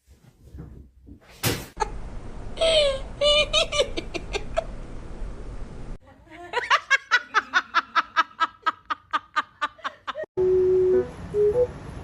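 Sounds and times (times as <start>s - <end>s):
person laughing high-pitched: 2.6s - 4.7s.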